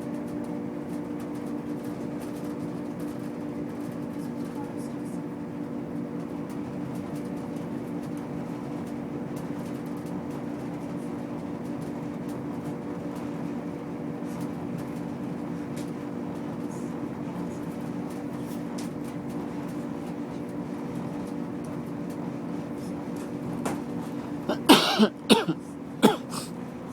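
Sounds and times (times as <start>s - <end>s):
train running hum: 22.6s - 26.9s.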